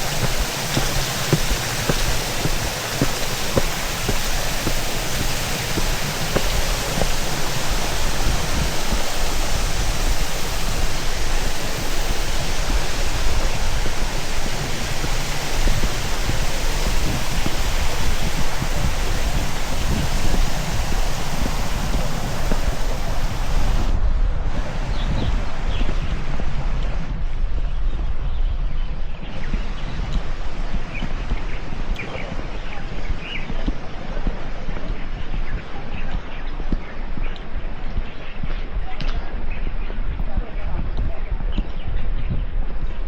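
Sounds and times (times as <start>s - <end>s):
water rushing: 0.0s - 27.3s
wind rumble on microphone: 0.0s - 43.0s.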